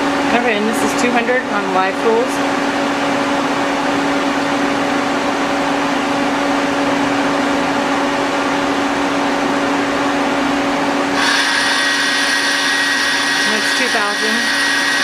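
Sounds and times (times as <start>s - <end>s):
lathe machine hum: 11.1s - 15.0s.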